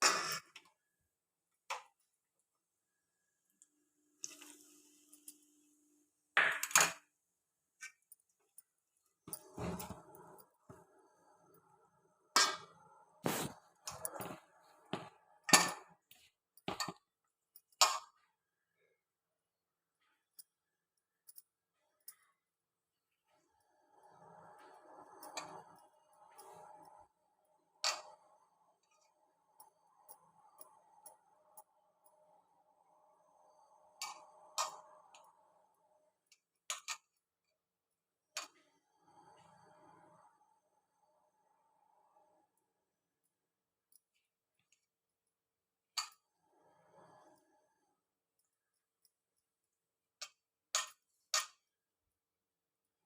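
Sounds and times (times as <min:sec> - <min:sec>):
faint steady hum: 0:23.3 - 0:36.7, 0:38.4 - 0:44.9.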